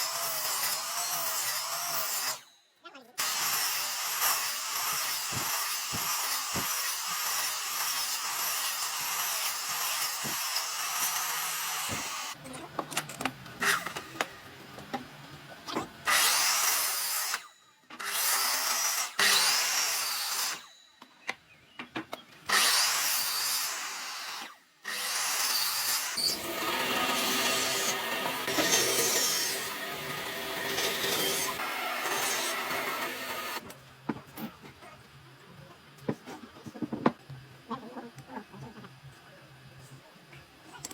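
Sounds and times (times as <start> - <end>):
power tool working wood: 22.5 - 33.6.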